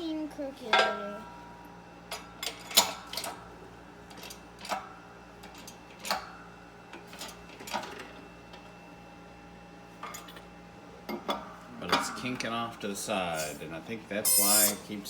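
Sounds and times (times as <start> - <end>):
metal parts clinking: 14.3 - 14.8.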